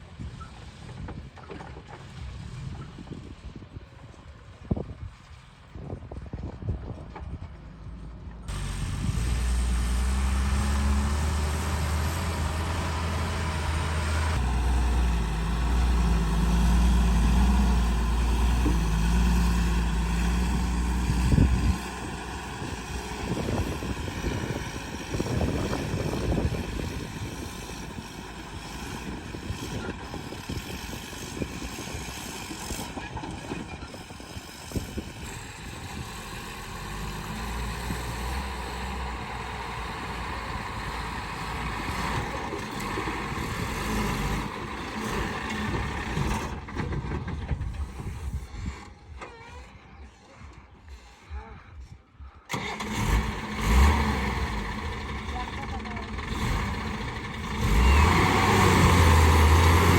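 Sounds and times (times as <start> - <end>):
truck diesel engine droning: 7.3 - 51.6, 52.5 - 59.9.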